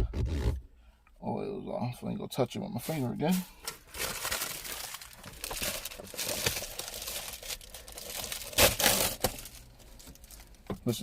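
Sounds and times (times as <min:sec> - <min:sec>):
plastic packaging crinkling: 0:03.6 - 0:10.6.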